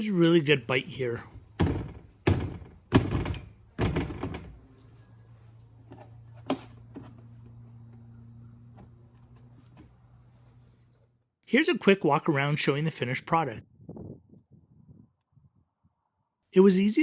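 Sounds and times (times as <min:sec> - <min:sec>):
loud short knocks: 0:01.6 - 0:04.6.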